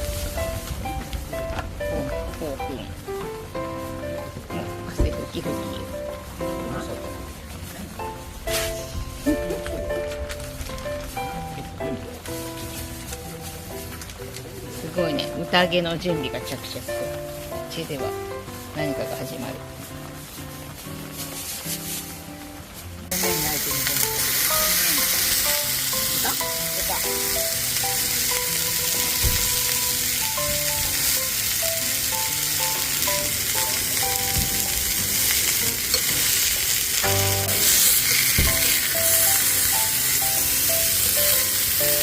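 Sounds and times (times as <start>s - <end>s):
food sizzling in a hot pan: 0.0s - 42.0s
light background melody: 0.0s - 42.0s.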